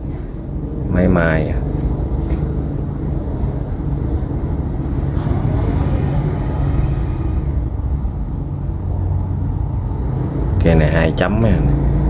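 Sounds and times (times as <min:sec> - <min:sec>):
low background rumble: 0:00.0 - 0:12.0
brighter noise swell: 0:02.3 - 0:10.7.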